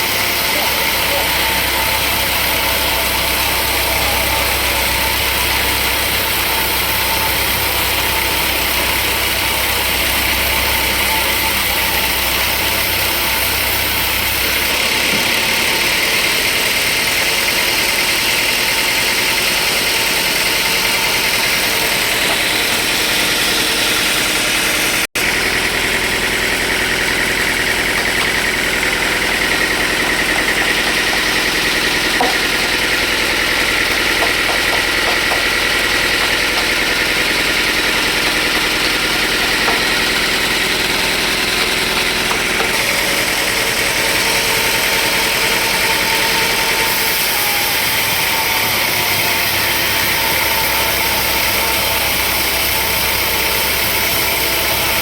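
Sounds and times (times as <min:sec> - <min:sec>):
low hum: 0:00.0 - 0:14.7
sawmill machinery running: 0:00.0 - 0:55.0.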